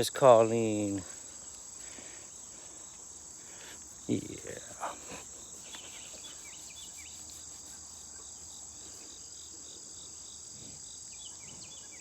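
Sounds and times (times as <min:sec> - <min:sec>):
insects droning: 0:00.0 - 0:12.0
regular pulsing chirp: 0:03.8 - 0:12.0.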